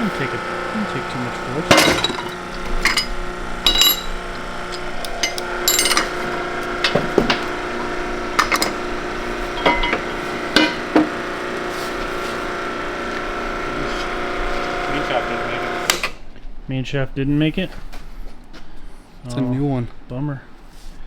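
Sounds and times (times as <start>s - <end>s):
steady hum: 0.0s - 16.2s
metal clinks and knocks: 1.7s - 7.8s, 8.4s - 8.9s, 9.5s - 11.1s.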